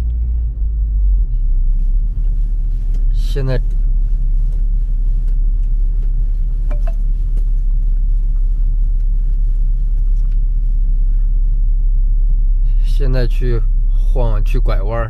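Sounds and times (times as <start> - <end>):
road noise: 0.0 - 8.3
car engine rumble: 0.0 - 15.0.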